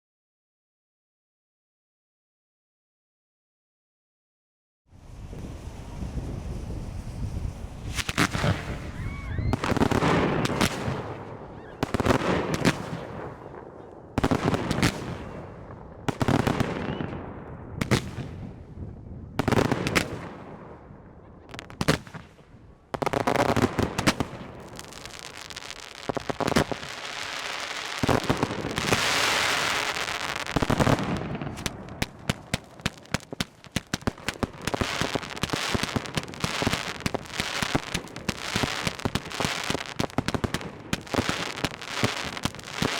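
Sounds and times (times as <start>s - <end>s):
fireworks sizzling hiss: 5.0s - 11.1s, 21.6s - 42.9s
firework shells bursting: 23.2s - 42.9s
rapid crackling pops: 23.9s - 42.9s.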